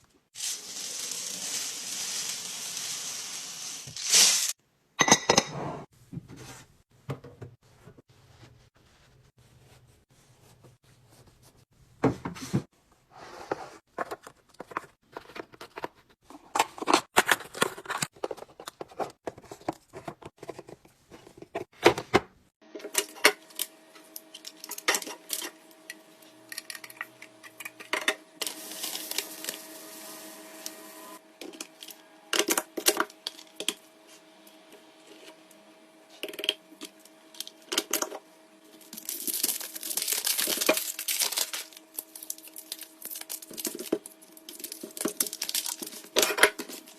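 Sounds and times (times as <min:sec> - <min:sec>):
loud rustling hiss: 0:00.4 - 0:04.6
packaging rustling and tearing: 0:00.4 - 0:04.6, 0:38.8 - 0:46.9
food packages clicking and tapping: 0:38.9 - 0:46.9.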